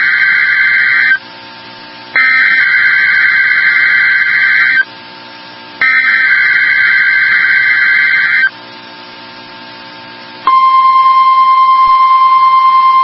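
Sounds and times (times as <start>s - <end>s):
buzzing digital warble bursts: 2.2s - 4.8s, 5.8s - 8.5s.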